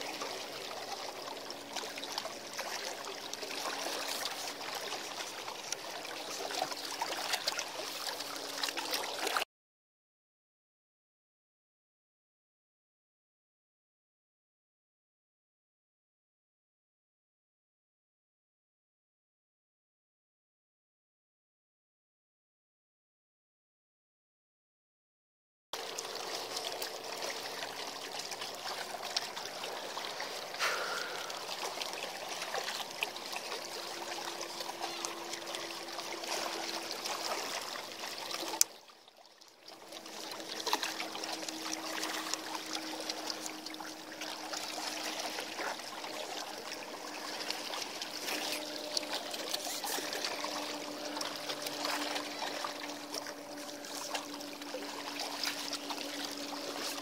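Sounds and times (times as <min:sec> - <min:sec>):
seawater lapping: 0:00.0 - 0:09.4, 0:25.8 - 0:57.0
faint steady hum: 0:25.8 - 0:57.0.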